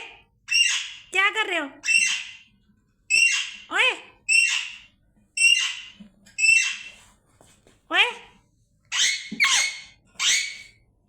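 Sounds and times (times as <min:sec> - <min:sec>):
parrot squawking: 0:00.5 - 0:01.1, 0:01.8 - 0:02.5, 0:03.1 - 0:07.0, 0:08.9 - 0:10.8.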